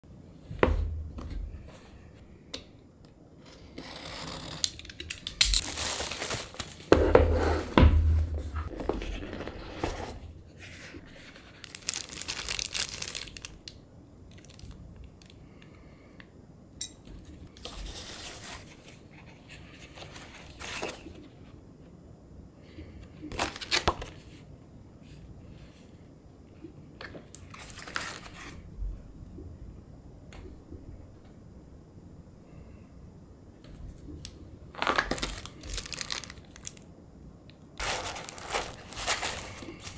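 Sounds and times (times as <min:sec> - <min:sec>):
paper and plastic tearing and crinkling: 0:03.9 - 0:06.9, 0:11.5 - 0:13.6, 0:34.8 - 0:36.8, 0:37.8 - 0:39.9.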